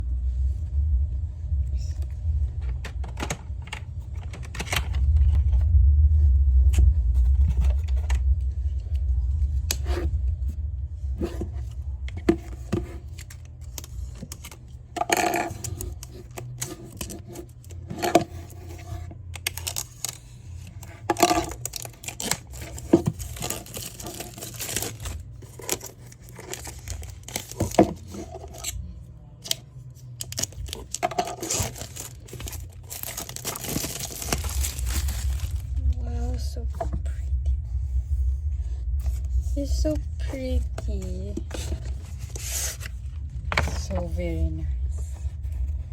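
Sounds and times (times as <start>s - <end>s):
microphone handling rumble: 0.0s - 13.1s, 30.4s - 45.9s
wrapping tearing and crinkling: 12.6s - 28.8s, 29.4s - 36.0s.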